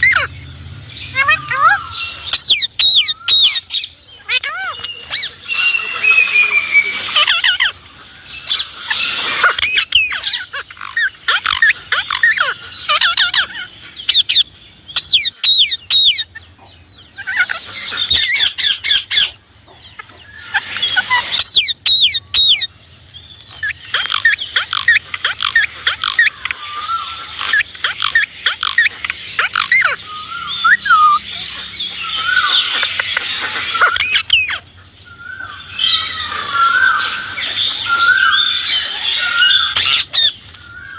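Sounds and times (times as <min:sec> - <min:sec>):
parakeet chattering and squawking: 0:00.0 - 0:40.9.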